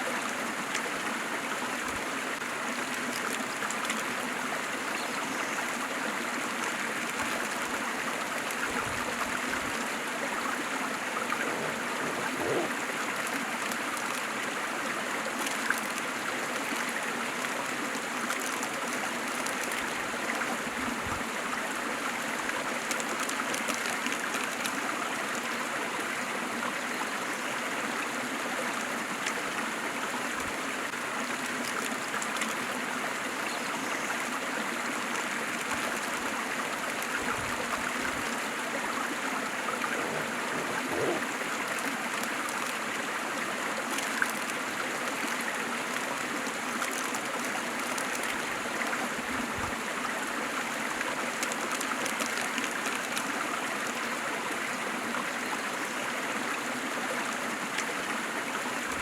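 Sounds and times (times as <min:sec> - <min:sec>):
water splashing and gurgling: 0:07.0 - 0:22.0, 0:35.4 - 0:50.1.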